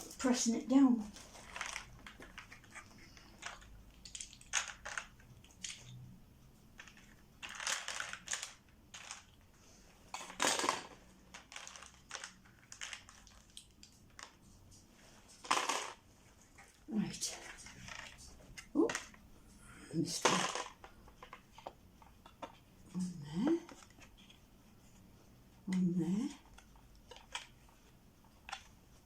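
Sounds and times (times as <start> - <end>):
kit pieces clicking into place: 1.5 - 6.0.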